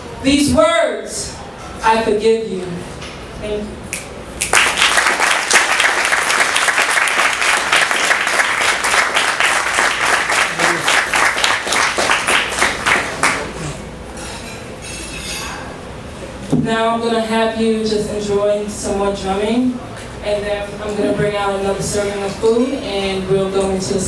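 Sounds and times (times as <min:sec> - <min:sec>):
audience applauding: 0:04.4 - 0:13.8.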